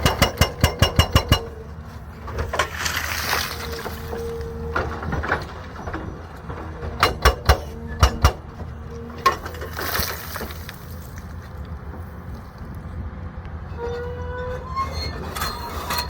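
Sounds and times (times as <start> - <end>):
excavator engine running: 0.0 - 16.0.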